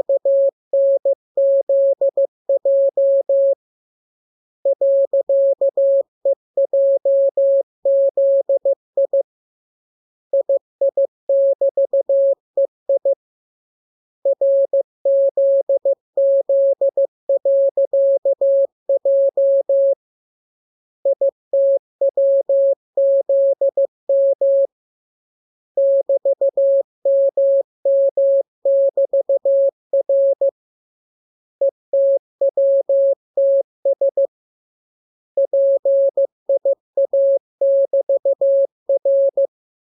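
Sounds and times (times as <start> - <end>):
morse code tone: 35.4 - 39.5.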